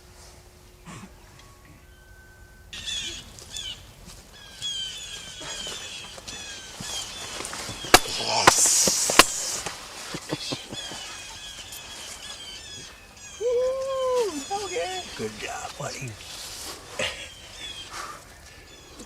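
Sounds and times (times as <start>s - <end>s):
birds calling: 0.6s - 19.0s
sharp crack: 7.4s - 10.3s.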